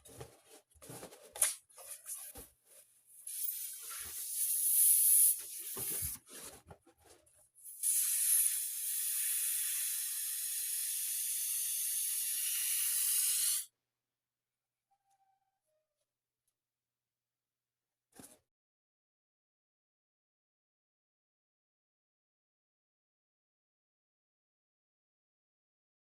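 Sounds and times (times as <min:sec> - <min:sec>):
air hissing into balloon: 0:03.3 - 0:06.2, 0:07.7 - 0:10.0.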